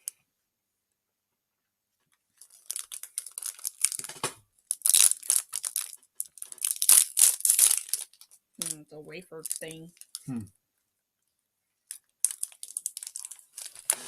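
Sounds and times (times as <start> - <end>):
snack packaging crackling and ripping: 2.4 - 8.8, 9.4 - 10.3, 11.9 - 14.0.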